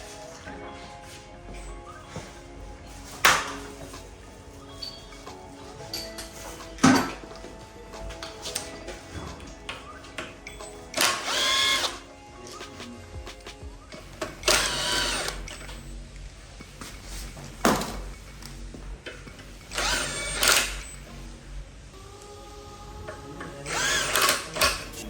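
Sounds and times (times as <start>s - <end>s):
power drill spinning: 8.2s - 16.1s, 19.3s - 21.2s, 23.6s - 25.0s.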